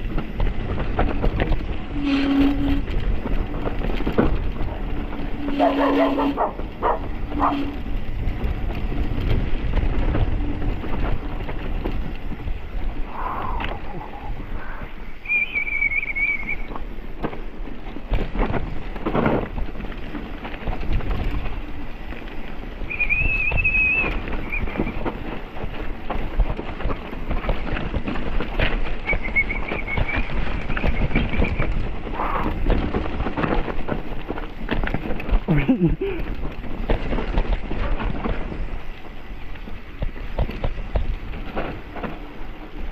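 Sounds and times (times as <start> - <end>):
bike rattling over rough ground: 0.0 - 42.9
wind rumbling on microphone: 0.0 - 42.9.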